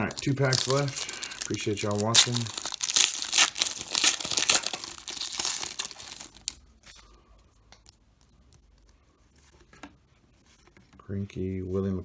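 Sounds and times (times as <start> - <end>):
foil pack tearing and crinkling: 0.0 - 6.6.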